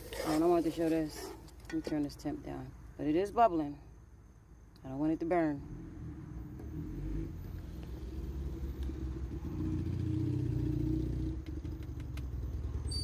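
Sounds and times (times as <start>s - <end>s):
motorcycle engine running: 7.2s - 12.9s.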